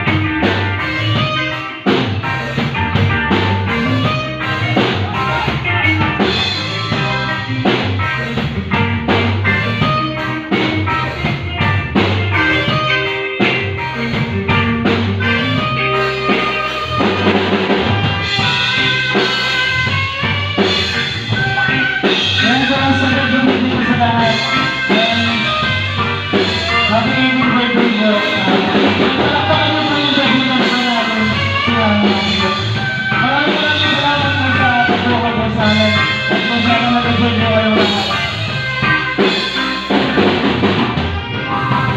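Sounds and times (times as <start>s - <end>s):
bass guitar: 0.0s - 41.9s
drum kit: 0.0s - 41.9s
guitar: 0.0s - 41.9s
person singing: 3.4s - 8.2s, 21.3s - 40.2s, 41.0s - 41.9s.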